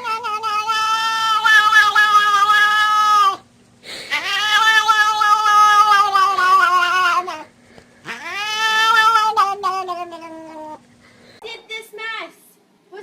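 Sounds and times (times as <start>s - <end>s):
cat yowling: 0.0s - 10.8s.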